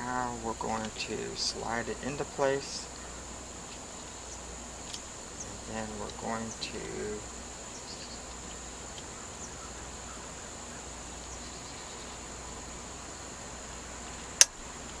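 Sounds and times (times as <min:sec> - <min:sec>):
insects chirring: 0:00.0 - 0:15.0.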